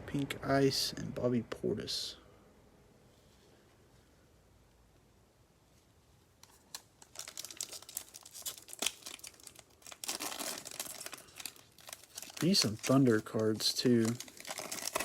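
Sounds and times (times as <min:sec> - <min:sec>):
wrapper tearing and crinkling: 0:06.4 - 0:15.0.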